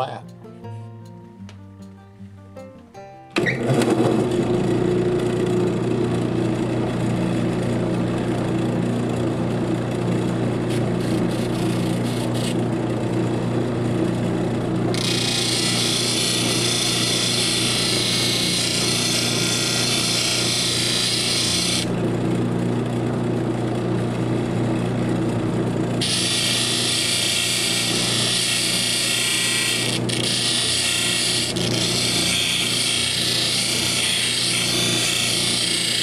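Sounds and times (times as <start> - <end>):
motor humming: 3.4 - 36.0
stone grinding scraping hiss: 10.7 - 12.6.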